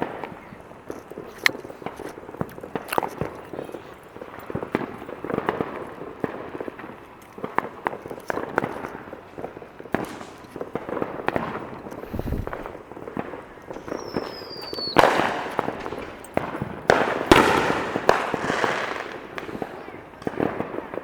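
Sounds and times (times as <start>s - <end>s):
fireworks pops and crackles: 0.0s - 21.0s
loud firework bangs: 0.0s - 21.0s
falling firework whistle: 13.7s - 20.4s.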